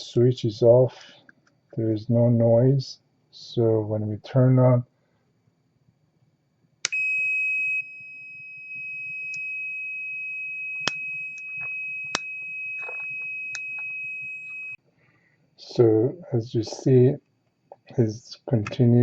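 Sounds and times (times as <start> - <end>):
continuity tester high beep: 6.9 - 9.6, 10.6 - 14.8.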